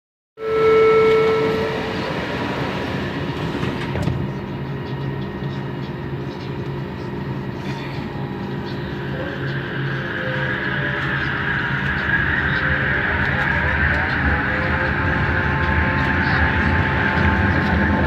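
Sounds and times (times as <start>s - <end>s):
clear steady tone: 0.4s - 2.6s
train rumbling: 0.4s - 18.0s.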